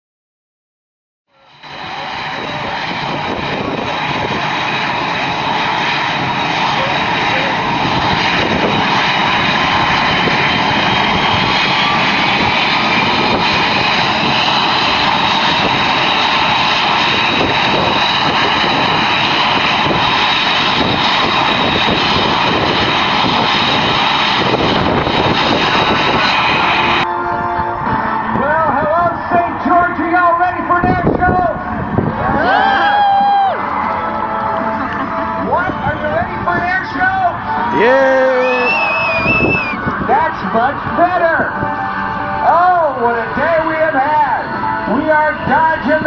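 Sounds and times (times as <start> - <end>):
aircraft engine running: 1.3 - 46.0.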